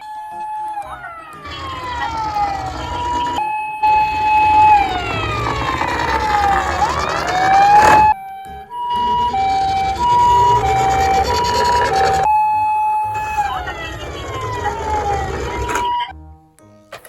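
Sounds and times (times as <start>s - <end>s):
two-tone hi-lo siren: 0.3s - 16.1s
wailing siren: 0.3s - 16.1s
engine rumble: 1.4s - 8.2s, 8.9s - 12.3s, 13.1s - 16.0s.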